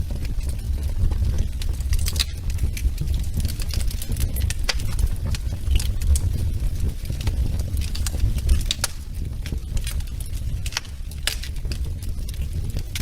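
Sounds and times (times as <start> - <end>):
fire crackling and popping: 0.0 - 13.0
low rumble of flames: 0.0 - 13.0.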